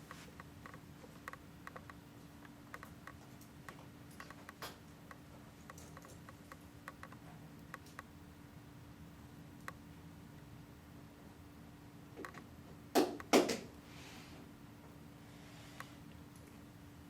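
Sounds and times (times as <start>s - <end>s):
steady low hum: 0.0s - 17.0s
light clicks and ticks: 0.1s - 8.1s.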